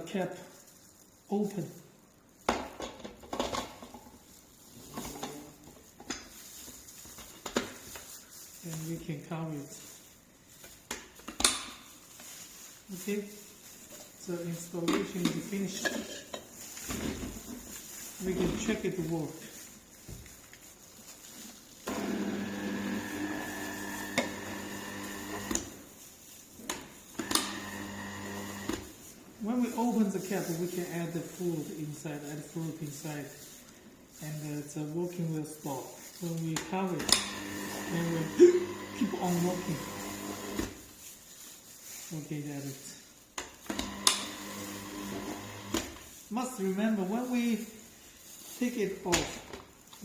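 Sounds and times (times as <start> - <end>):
juicer motor humming: 21.8 - 25.7, 27.2 - 28.8, 37.0 - 40.7, 43.7 - 45.9.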